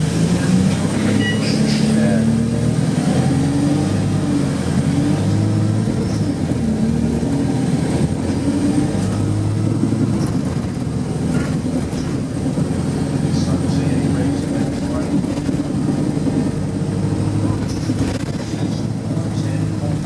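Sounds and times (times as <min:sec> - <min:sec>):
bus diesel engine running: 0:00.0 - 0:20.0.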